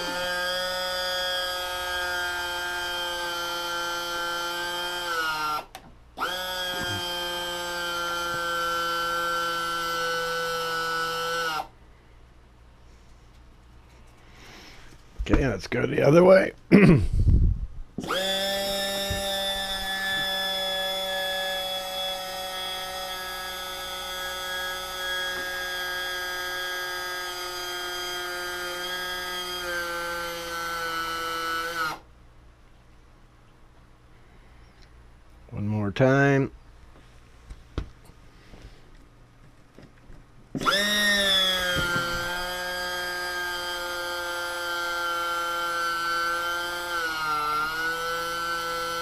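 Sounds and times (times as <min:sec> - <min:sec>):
small electric pump whining: 0:00.0 - 0:11.7, 0:18.0 - 0:32.1, 0:40.5 - 0:49.0.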